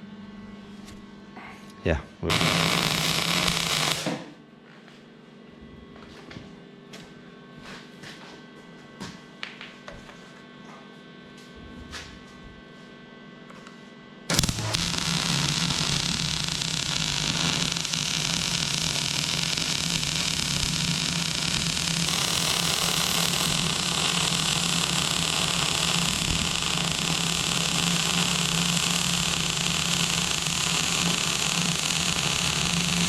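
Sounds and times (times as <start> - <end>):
welding arc crackling: 2.3 - 4.2, 14.3 - 33.0
low hum: 14.3 - 33.0.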